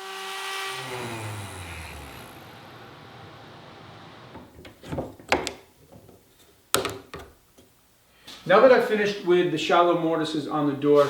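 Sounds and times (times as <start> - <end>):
router motor spinning down: 0.0 - 4.5.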